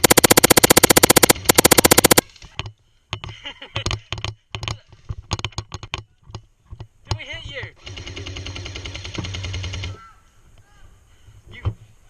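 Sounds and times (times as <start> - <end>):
airsoft gun full-auto burst: 0.0 - 2.2
sharp clicks and knocks: 0.0 - 2.2.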